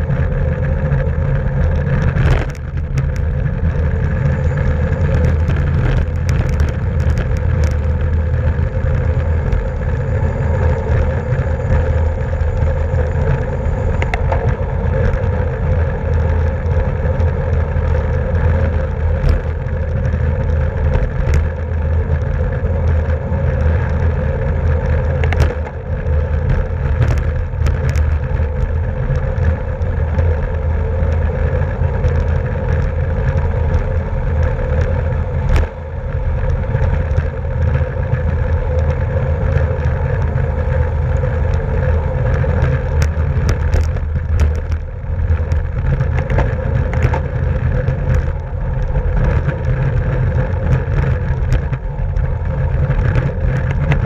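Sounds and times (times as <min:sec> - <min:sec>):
bicycle road and drivetrain rumble: 0:00.0 - 0:54.0
wind rushing over microphone: 0:00.0 - 0:54.0.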